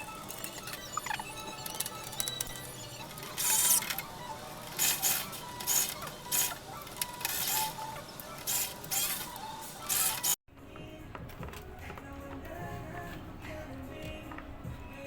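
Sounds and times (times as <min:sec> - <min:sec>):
background music: 0:09.5 - 0:15.0.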